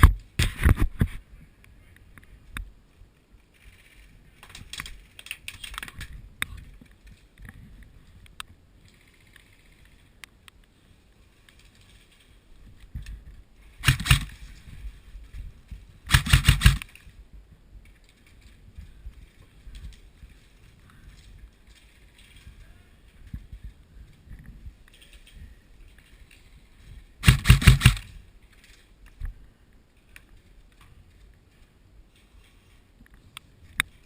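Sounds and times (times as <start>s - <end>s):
clicks and rattles: 3.5s - 7.6s
airsoft rifle firing bursts: 13.8s - 14.4s, 16.1s - 16.9s, 27.2s - 28.2s.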